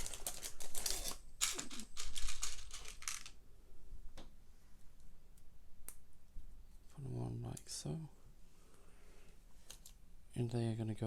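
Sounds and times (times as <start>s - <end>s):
plastic pieces clattering: 0.0s - 3.4s.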